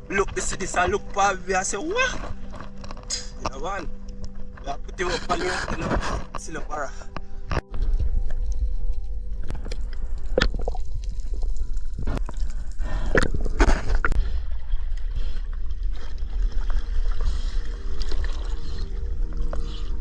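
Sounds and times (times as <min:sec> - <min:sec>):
low rumble: 0:00.0 - 0:20.0
water gurgling and bubbling: 0:09.3 - 0:20.0.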